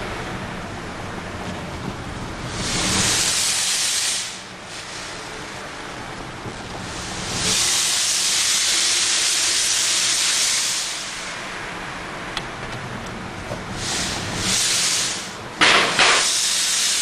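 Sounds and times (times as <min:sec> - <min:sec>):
exhaust gas hissing: 0:00.0 - 0:17.0.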